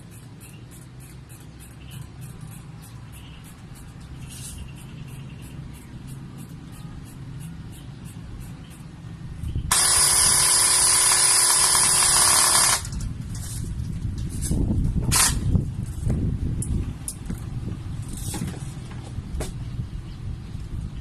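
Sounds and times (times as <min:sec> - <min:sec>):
electric airsoft gun buzzing: 0:09.7 - 0:13.0, 0:15.1 - 0:15.5.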